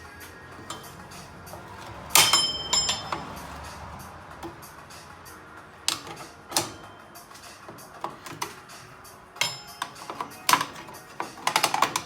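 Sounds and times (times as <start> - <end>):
tools clanking on brake springs: 0.1 - 12.0
sharp metallic knocks: 0.7 - 3.8.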